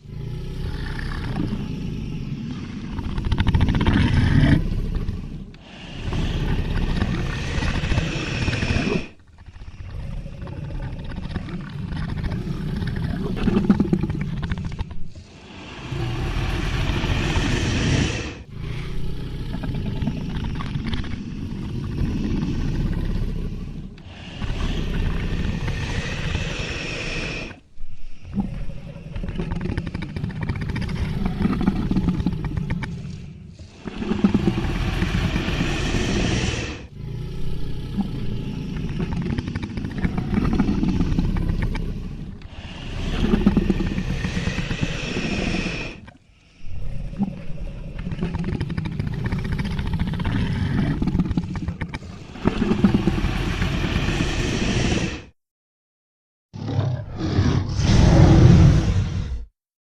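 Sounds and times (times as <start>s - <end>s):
dragon creature roars: 15.3s - 19.9s, 33.6s - 38.8s, 52.0s - 55.3s, 56.6s - 59.5s.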